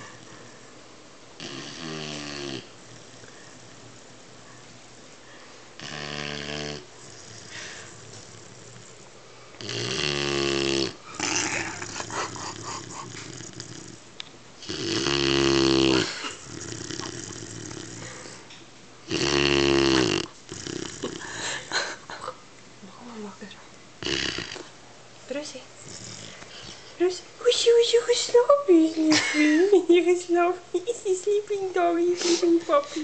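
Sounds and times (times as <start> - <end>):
quiet breathing: 0.0 - 0.8, 2.7 - 5.8, 6.8 - 9.6, 16.0 - 18.6, 21.1 - 22.1
puppy snoring: 1.4 - 3.8, 5.8 - 21.7, 24.0 - 24.8, 25.8 - 27.1.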